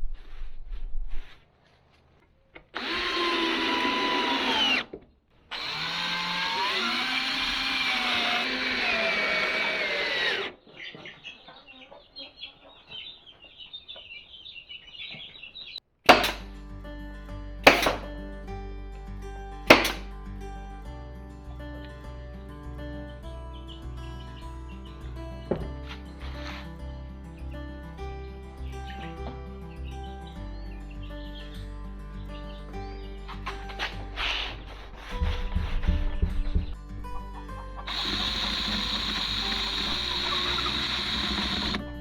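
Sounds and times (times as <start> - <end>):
power drill running: 2.8 - 4.9, 5.5 - 10.6, 37.9 - 41.8.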